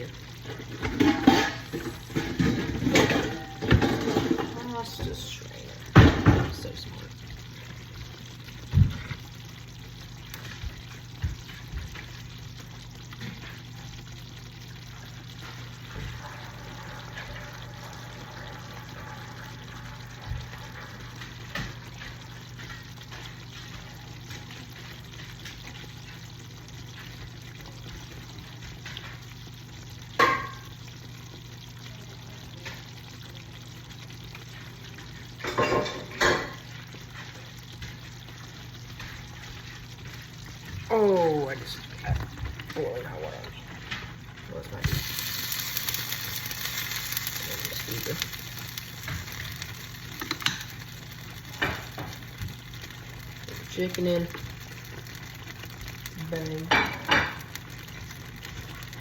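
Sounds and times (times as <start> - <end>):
food sizzling in a pan: 0.0 - 59.0
utensils and cookware clattering: 0.3 - 5.4, 35.2 - 37.4, 44.8 - 52.2, 56.5 - 57.5.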